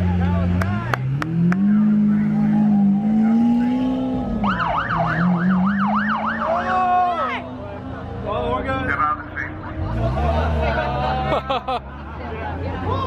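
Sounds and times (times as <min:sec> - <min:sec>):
car engine droning: 0:00.0 - 0:13.0
siren yelping: 0:04.3 - 0:07.4.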